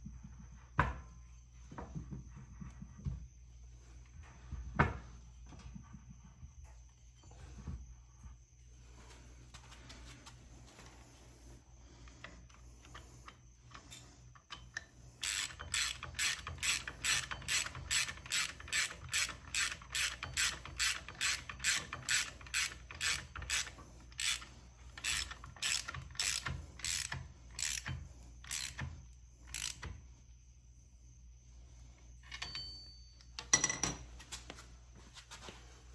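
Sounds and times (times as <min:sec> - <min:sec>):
ratchet wrench clicking: 0:15.2 - 0:29.9.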